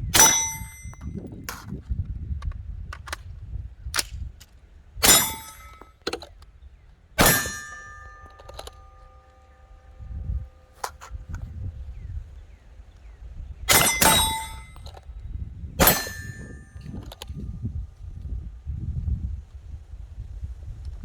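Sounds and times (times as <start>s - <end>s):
metallic ring of steel target: 0.0s - 1.2s, 5.0s - 5.9s, 7.2s - 11.5s, 13.7s - 15.0s, 15.8s - 17.2s
loud gunshots: 7.2s - 8.1s.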